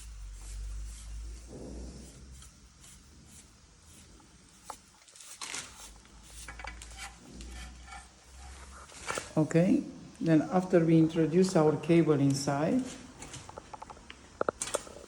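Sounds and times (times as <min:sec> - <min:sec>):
cable rustling and rubbing: 0:00.0 - 0:09.4.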